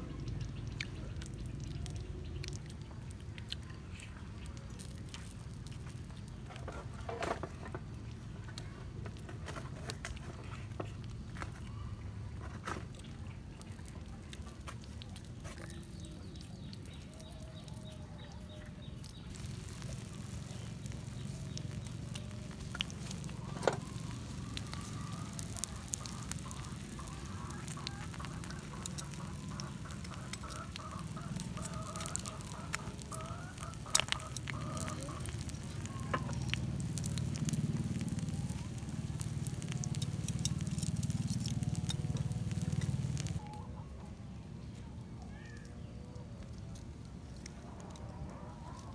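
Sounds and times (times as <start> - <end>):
wood fire crackling and popping: 0.0 - 11.6, 18.9 - 43.5.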